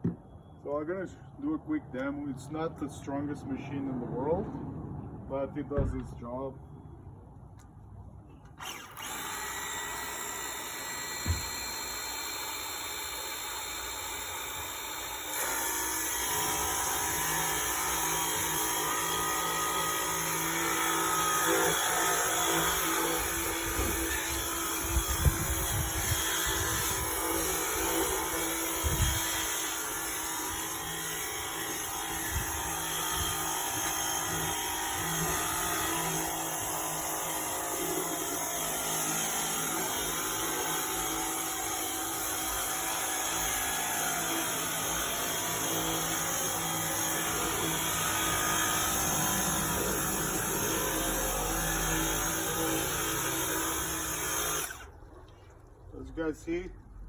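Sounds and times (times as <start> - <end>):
pressure washer pump humming: 8.6 - 55.2
sharp knocks: 11.2 - 11.5.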